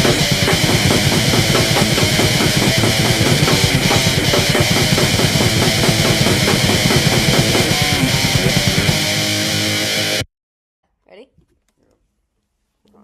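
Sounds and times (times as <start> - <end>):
fast dense drumming: 0.0 - 9.6
heavy guitar: 0.0 - 10.3.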